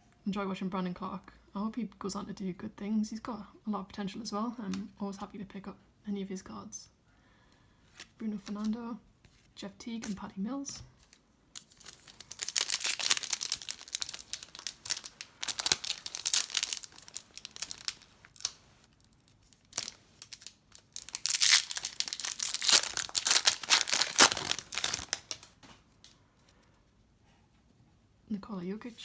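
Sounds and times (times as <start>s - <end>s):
plastic wrapper tearing and crinkling: 11.0s - 26.2s.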